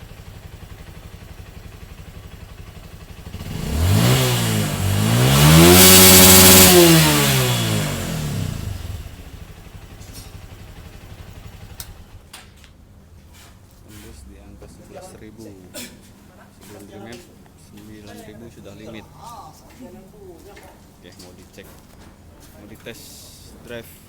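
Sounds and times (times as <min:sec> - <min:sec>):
motorcycle engine idling and revving: 0:00.0 - 0:12.3.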